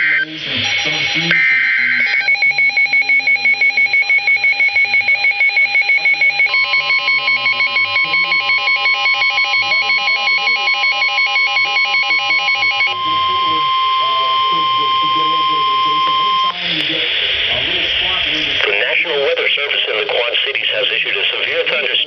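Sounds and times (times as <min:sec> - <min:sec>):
pulsing electronic alarm tone: 0:00.0 - 0:18.2
steady warning tone: 0:00.0 - 0:19.9
digital header burst: 0:00.0 - 0:21.4.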